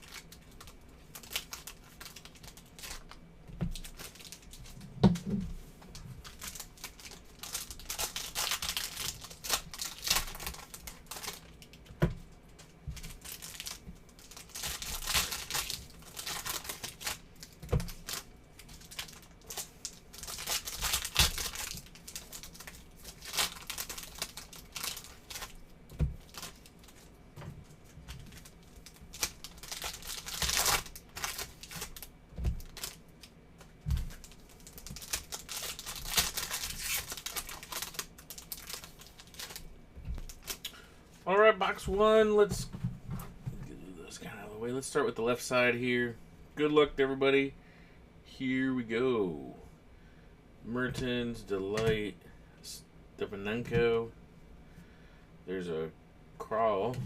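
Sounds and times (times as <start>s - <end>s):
plastic wrapping crinkling and tearing: 0.0s - 4.9s, 5.9s - 27.2s, 27.8s - 40.8s.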